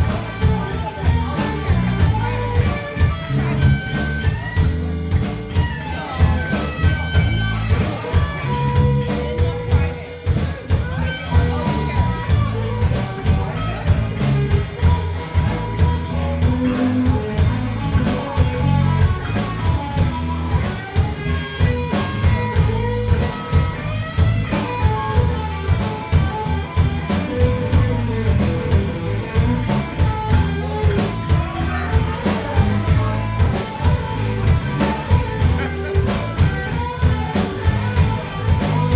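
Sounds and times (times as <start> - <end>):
drum kit beat: 0.0 - 38.9
electric guitar: 0.0 - 38.9.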